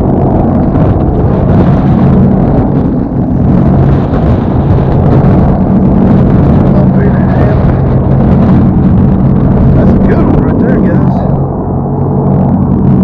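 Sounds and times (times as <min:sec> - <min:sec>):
boat engine humming: 0:00.0 - 0:13.0.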